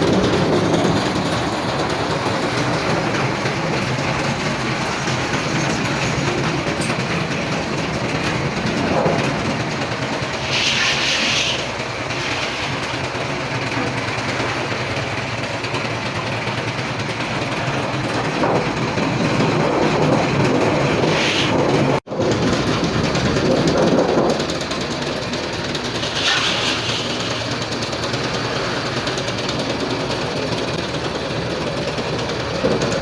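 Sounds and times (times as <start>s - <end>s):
machinery clattering: 0.0s - 33.0s.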